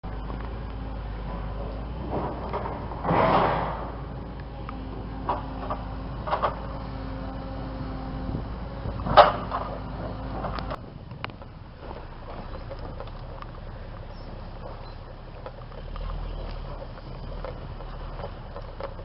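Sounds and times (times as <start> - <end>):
vehicle low hum: 0.0 - 19.0
loud clunk: 1.2 - 4.2, 9.0 - 10.8.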